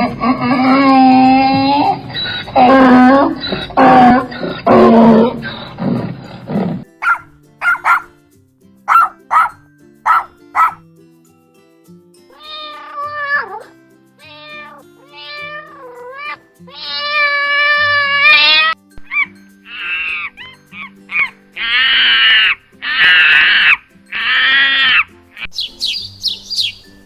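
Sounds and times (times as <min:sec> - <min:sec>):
cat meowing: 0:00.0 - 0:05.7, 0:12.3 - 0:20.4
animal roar: 0:00.0 - 0:06.9, 0:14.4 - 0:18.8, 0:21.6 - 0:25.1
soft background music: 0:00.0 - 0:27.0
dog barking: 0:07.0 - 0:08.1, 0:08.9 - 0:10.8.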